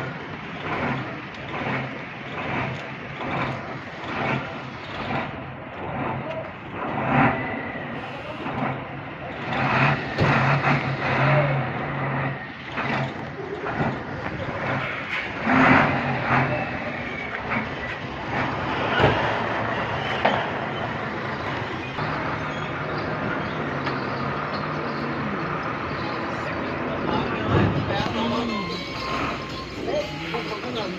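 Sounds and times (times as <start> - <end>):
truck engine idling: 0.0 - 30.9
metal knocks and clanks: 27.1 - 30.9.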